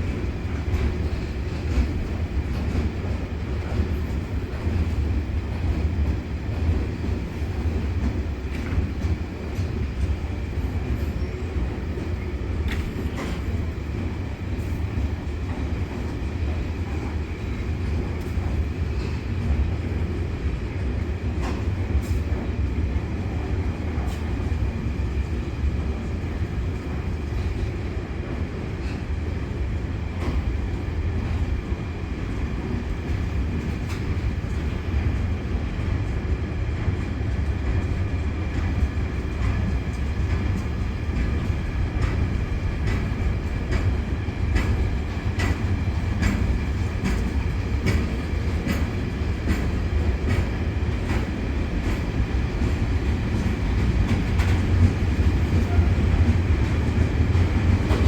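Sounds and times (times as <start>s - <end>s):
freight train rumbling: 0.0s - 58.0s
wheels clicking over rail joints: 37.8s - 58.0s.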